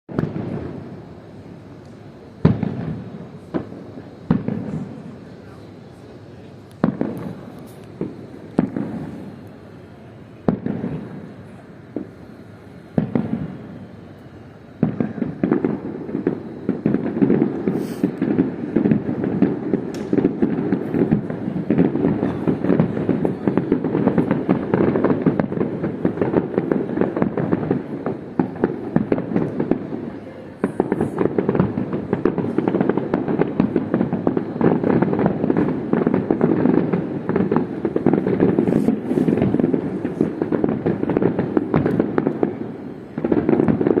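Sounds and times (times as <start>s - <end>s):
fireworks bangs and crackle: 0.1s - 44.0s.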